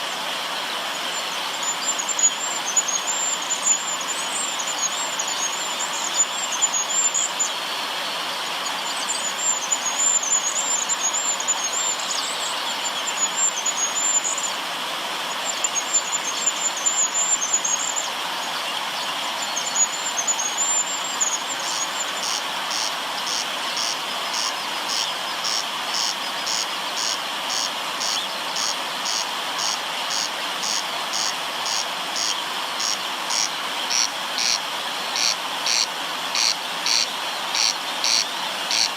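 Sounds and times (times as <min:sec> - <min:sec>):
river water running: 0:00.0 - 0:38.9
insect chirping: 0:00.9 - 0:07.6, 0:08.6 - 0:14.6, 0:19.3 - 0:38.9
high thin trilling calls: 0:19.4 - 0:38.9.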